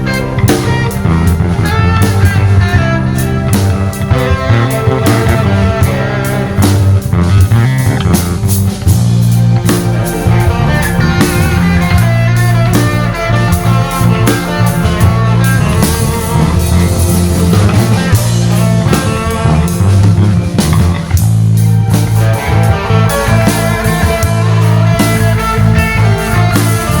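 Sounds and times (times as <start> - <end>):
live band playing instrumental: 0.0 - 27.0
steady drumming: 0.0 - 27.0
strong bass line: 0.0 - 27.0.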